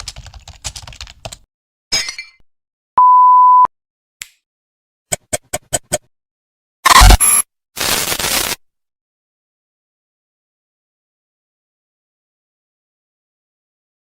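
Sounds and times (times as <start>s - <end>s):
censor bleep: 3.0s - 3.7s, 6.9s - 7.4s.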